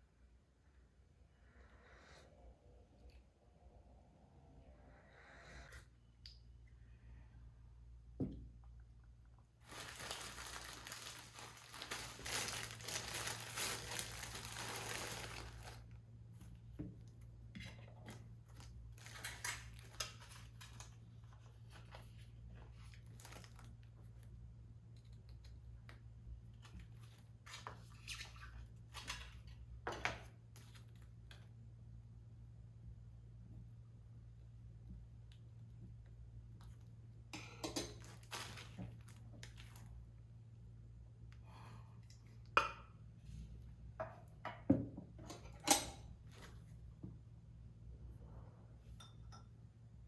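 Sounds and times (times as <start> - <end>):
crinkling and rustling: 9.6 - 24.4, 37.8 - 40.0.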